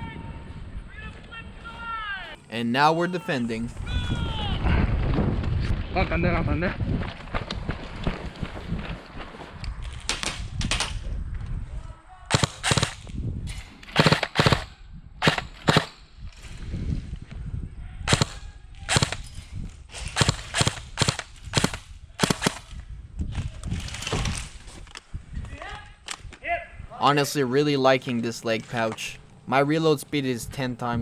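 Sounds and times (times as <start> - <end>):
airsoft gun shots: 12.3 - 13.0, 14.0 - 16.0, 18.1 - 19.2, 20.1 - 22.7.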